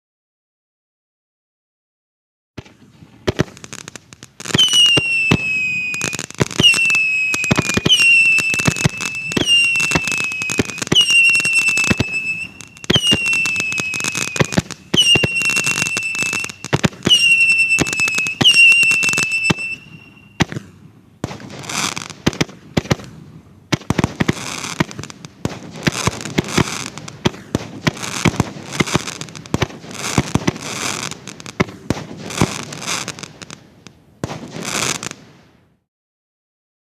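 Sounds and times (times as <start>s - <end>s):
firework crackling: 2.6s - 35.8s
firework shots: 2.6s - 35.8s
firework whistles falling in pitch: 4.4s - 20.5s.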